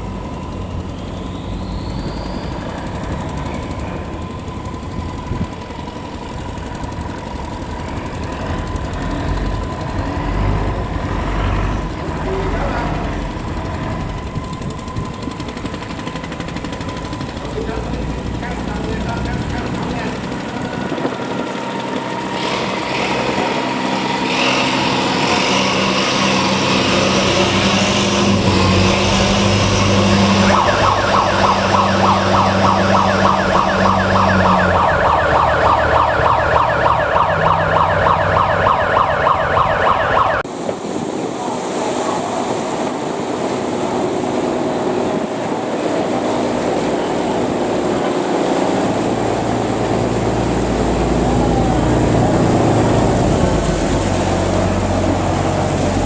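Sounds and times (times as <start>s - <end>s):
high-pitched buzzing engine: 0.0s - 40.4s
boat engines running: 0.0s - 56.0s.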